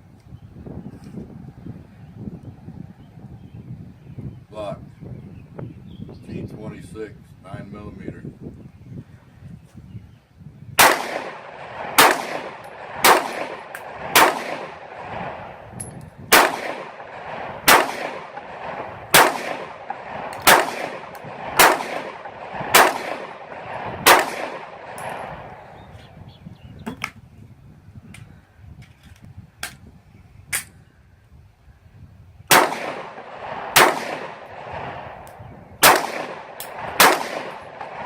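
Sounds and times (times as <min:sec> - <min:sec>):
pistol shots: 0:10.8 - 0:15.5, 0:16.3 - 0:25.6, 0:32.5 - 0:35.2, 0:35.8 - 0:38.0.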